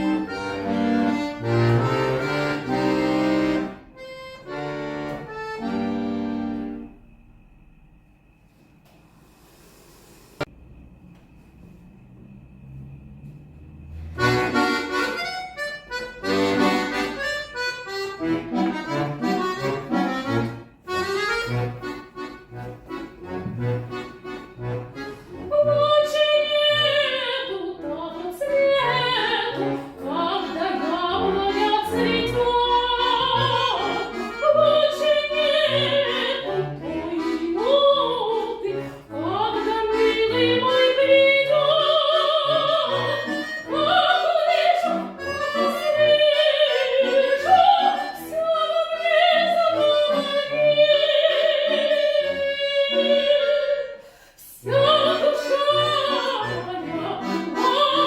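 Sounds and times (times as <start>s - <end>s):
instrumental accompaniment: 0.0s - 6.9s, 13.2s - 58.0s
classical solo singing: 25.4s - 58.0s.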